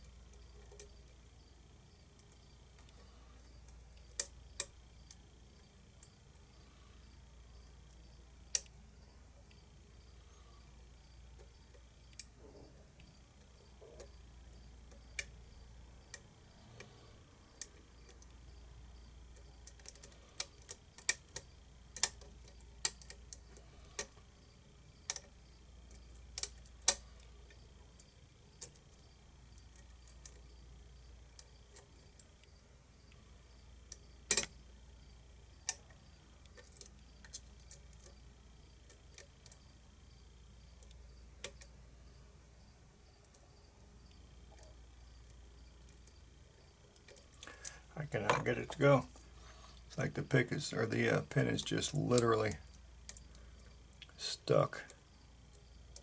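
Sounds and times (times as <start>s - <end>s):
lock pick clicking on pins: 19.3s - 24.2s, 33.9s - 34.6s.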